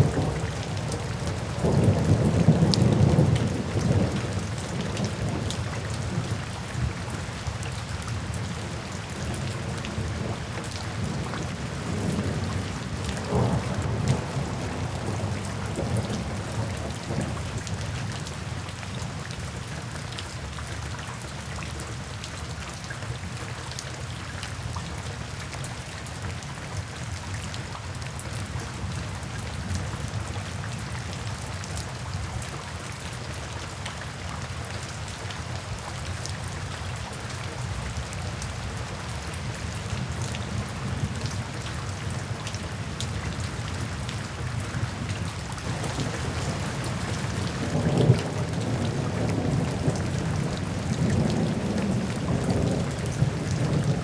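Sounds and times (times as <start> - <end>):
rain falling: 0.0 - 54.0
thunder rolling: 45.6 - 54.0.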